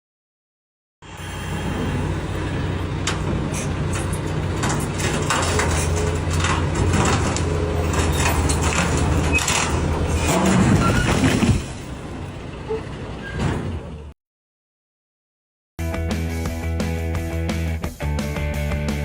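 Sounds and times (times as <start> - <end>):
low engine-like drone: 1.0 - 10.9
clattering and knocks: 2.8 - 12.1.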